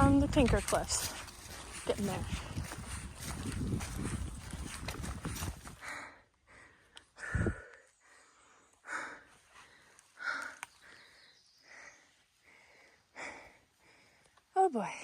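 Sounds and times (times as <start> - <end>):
person breathing hard: 5.3 - 14.4.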